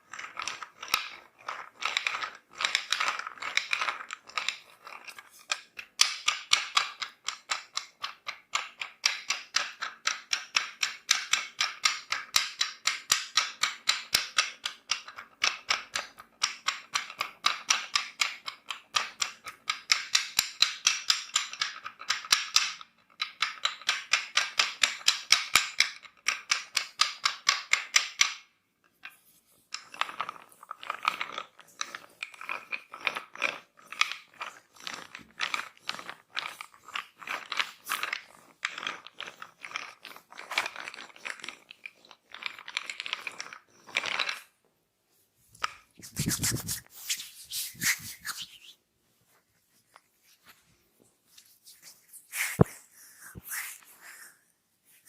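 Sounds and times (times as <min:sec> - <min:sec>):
hands slapping on skin: 0:46.0 - 0:48.7.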